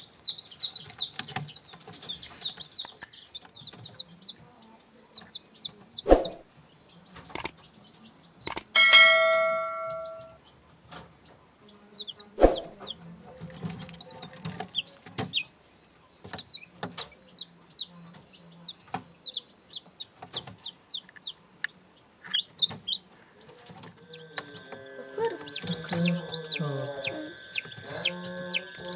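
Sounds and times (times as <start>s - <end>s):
chicks peeping: 0.0s - 28.9s
clicks: 7.4s - 7.6s, 8.5s - 10.3s
ringing chime: 8.5s - 10.3s.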